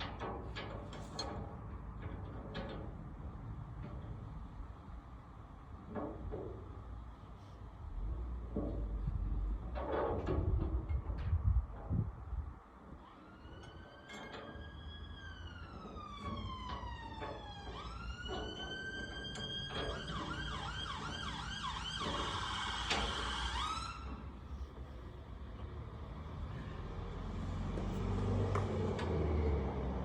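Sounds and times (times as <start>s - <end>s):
emergency vehicle siren: 13.0s - 24.3s.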